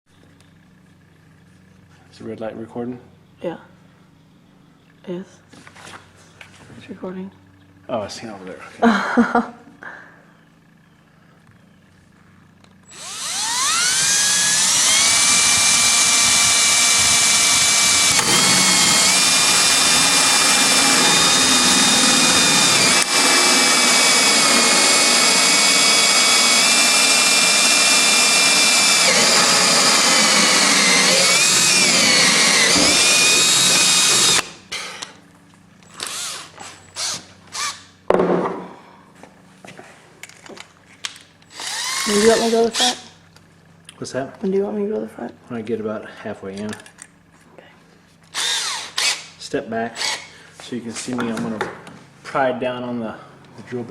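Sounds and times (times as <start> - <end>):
power drill whining: 12.9 - 35.1, 35.8 - 37.9, 41.5 - 43.1, 48.3 - 49.3, 50.0 - 50.3.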